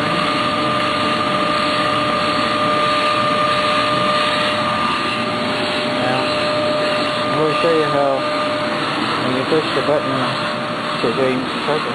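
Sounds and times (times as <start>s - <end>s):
vacuum cleaner running: 0.0s - 11.9s.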